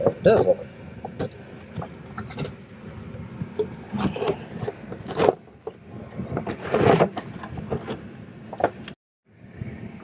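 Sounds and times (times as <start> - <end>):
packaging rubbing and scraping: 3.3 - 5.8, 6.4 - 8.8.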